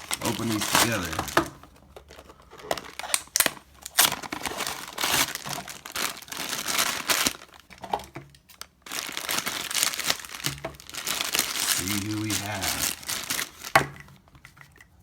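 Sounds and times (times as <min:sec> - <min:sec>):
cardboard boxes tearing: 0:00.0 - 0:01.4, 0:02.8 - 0:07.4
wrapping crinkling: 0:00.0 - 0:14.3.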